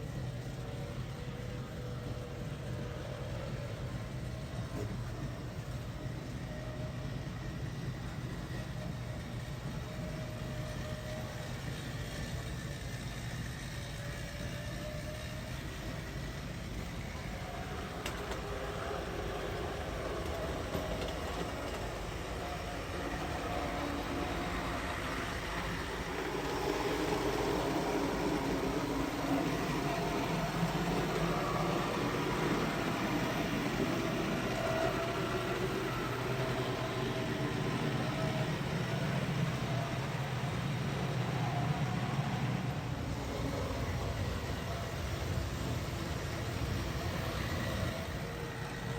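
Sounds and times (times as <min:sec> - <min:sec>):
wheels rattling on rail: 0:00.0 - 0:48.9.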